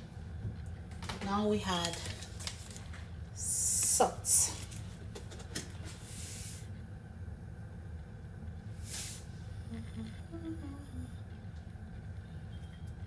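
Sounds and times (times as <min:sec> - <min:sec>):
low kitchen hum: 0:00.0 - 0:13.0.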